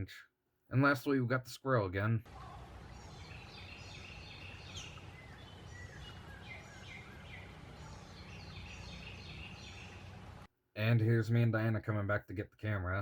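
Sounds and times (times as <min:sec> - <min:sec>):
steady low background hiss: 0:00.7 - 0:13.0
small birds chirping and singing: 0:02.3 - 0:10.5.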